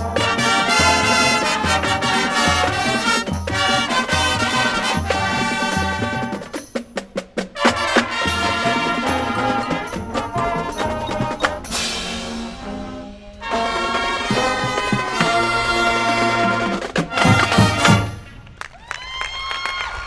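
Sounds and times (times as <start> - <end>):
brass chords: 0.0 - 18.6
marching band playing: 0.0 - 18.7
drums: 0.0 - 20.0
cymbal crash: 11.6 - 13.8.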